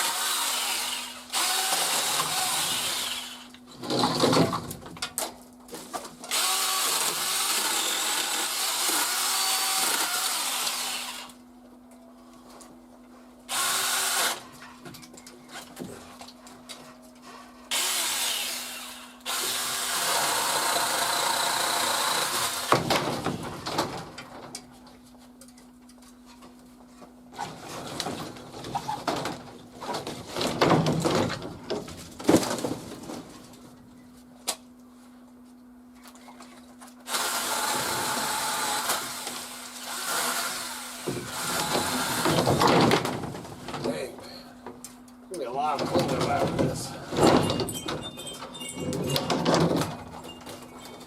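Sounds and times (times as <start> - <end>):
electric chainsaw cutting branches: 0.0 - 4.4, 6.2 - 11.4, 13.5 - 14.5, 17.7 - 23.3, 37.0 - 43.2.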